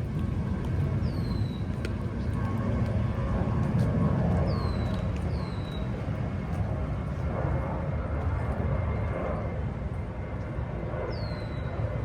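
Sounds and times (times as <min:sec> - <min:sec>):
low outdoor rumble: 0:00.0 - 0:12.0.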